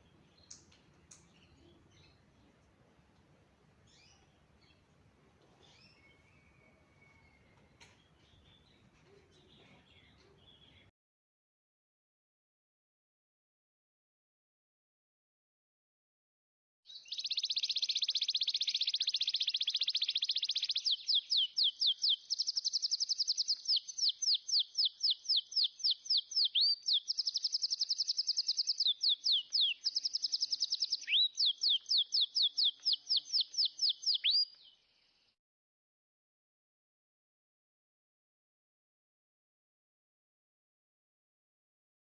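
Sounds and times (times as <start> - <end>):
small songbird singing: 0.0 - 2.8, 3.8 - 4.9, 5.6 - 10.9, 16.9 - 35.4.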